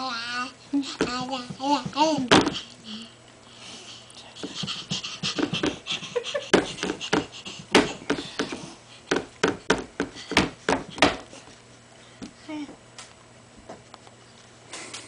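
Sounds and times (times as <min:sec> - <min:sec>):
baby panting: 0:02.4 - 0:09.1.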